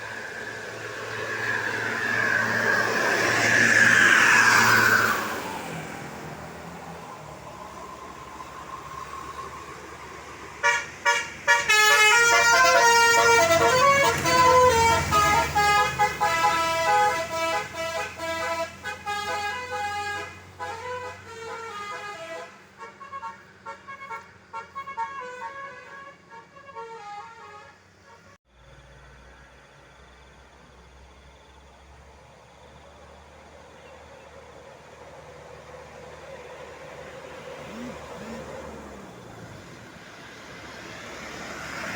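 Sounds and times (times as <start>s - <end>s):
bus engine rumble: 0.0s - 41.9s
bus horn playing melody: 10.6s - 28.4s.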